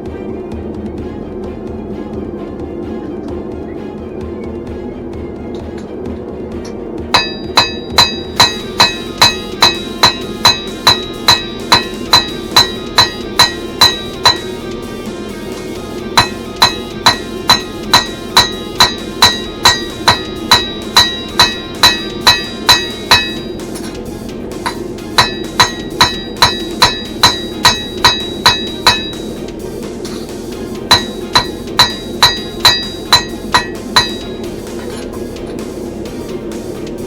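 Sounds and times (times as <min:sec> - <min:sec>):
hammer striking anvil: 0:06.6 - 0:14.8, 0:15.7 - 0:36.1.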